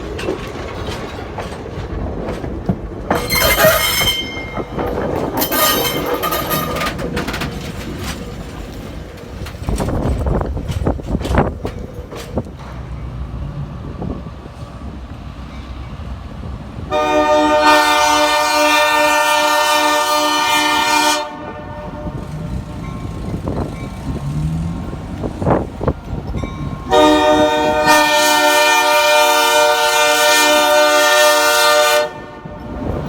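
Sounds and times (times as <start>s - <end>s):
locomotive air horn blast: 16.9s - 22.5s, 26.9s - 32.9s
diesel engine rumbling: 20.6s - 28.6s.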